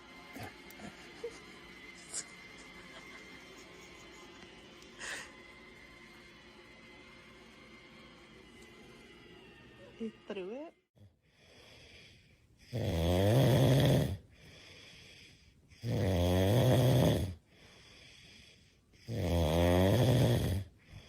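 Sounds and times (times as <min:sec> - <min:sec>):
quiet breathing: 0:11.0 - 0:12.8, 0:14.2 - 0:15.8, 0:17.3 - 0:19.1, 0:20.6 - 0:21.0
dog snoring: 0:11.4 - 0:21.0.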